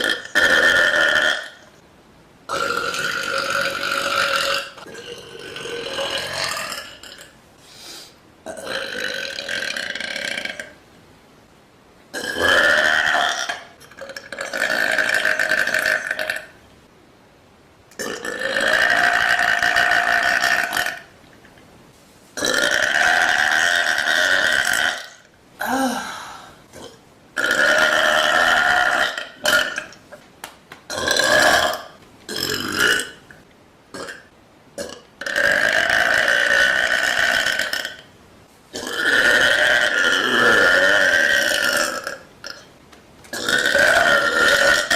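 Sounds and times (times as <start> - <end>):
woman burping: 22.4 - 30.0.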